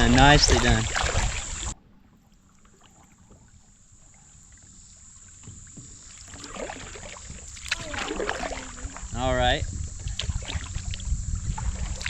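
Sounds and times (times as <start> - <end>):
paddle splashes: 0.0 - 12.0
knocks against kayak hull: 5.4 - 6.2.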